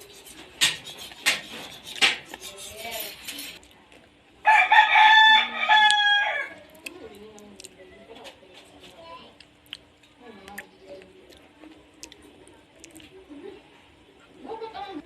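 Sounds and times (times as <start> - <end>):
rooster crowing: 4.4 - 6.6.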